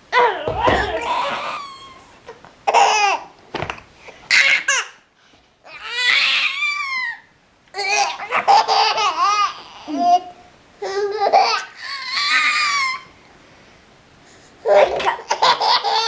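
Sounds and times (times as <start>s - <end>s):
baby belly-laughing: 0.2s - 3.3s, 7.8s - 13.1s, 14.6s - 16.0s.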